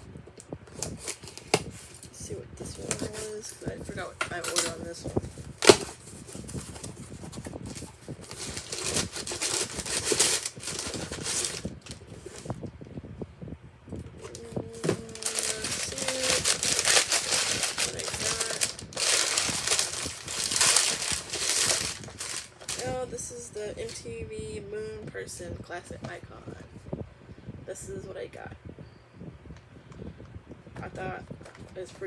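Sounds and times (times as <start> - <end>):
plastic wrap and paper crinkling: 0.7 - 12.6, 14.2 - 24.0.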